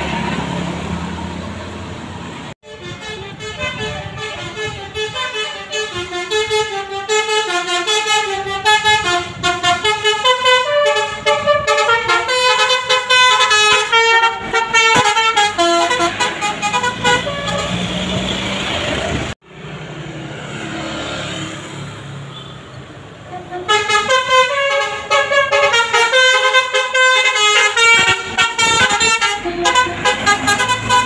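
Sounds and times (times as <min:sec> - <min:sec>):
bus engine and road noise: 0:00.0 - 0:31.0
musical air horn melody: 0:02.6 - 0:18.0, 0:23.3 - 0:31.0.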